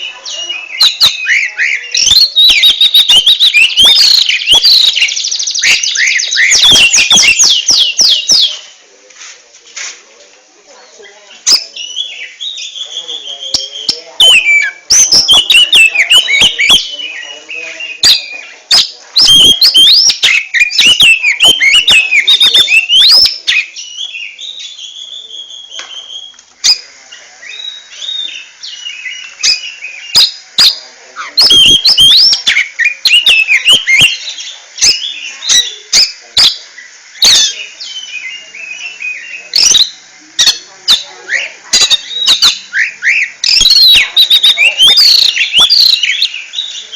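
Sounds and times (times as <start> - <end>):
bird singing whistled phrases: 0.0 - 8.7, 11.5 - 46.9.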